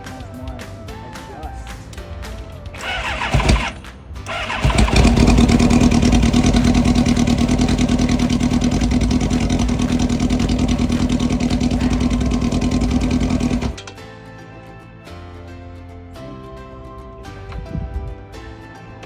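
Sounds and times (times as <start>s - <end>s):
motorcycle engine idling: 2.8s - 13.8s
motorcycle electric starter cranking: 2.8s - 14.0s.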